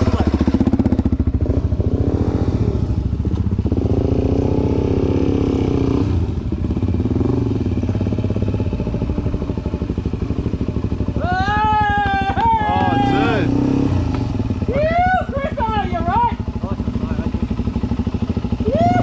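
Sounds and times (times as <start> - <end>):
off-road motorcycle engine revving: 0.0 - 19.0
person calling out: 11.2 - 13.5.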